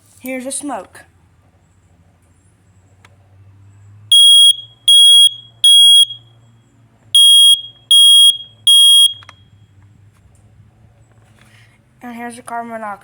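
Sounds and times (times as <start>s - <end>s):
smoke alarm beeping: 4.1s - 6.4s, 7.2s - 9.4s.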